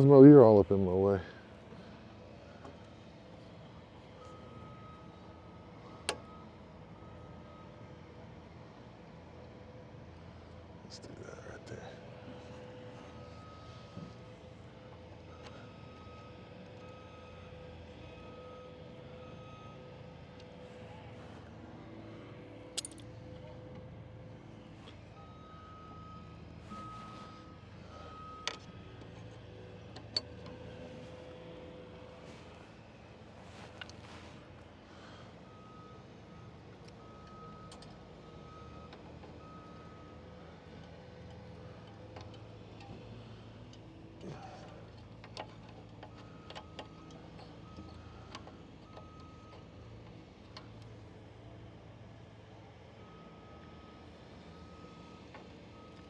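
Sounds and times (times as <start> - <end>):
metallic clicks from hand tools: 22.8 - 23.1.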